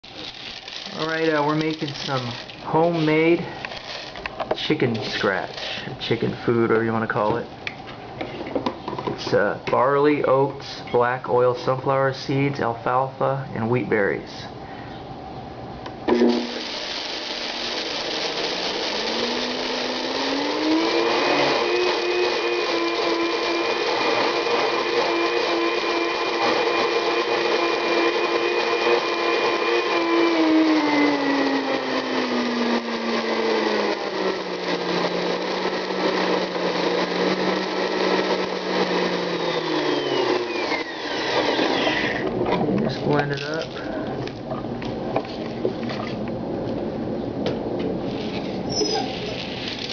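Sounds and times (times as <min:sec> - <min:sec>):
blender grinding dry grains: 0:00.0 - 0:06.2, 0:16.1 - 0:42.3, 0:48.0 - 0:49.9.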